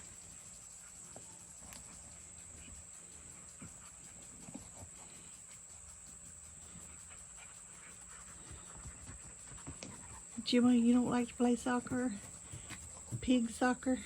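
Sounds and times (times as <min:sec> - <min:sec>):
dog paws and toy tapping: 0:08.4 - 0:10.4.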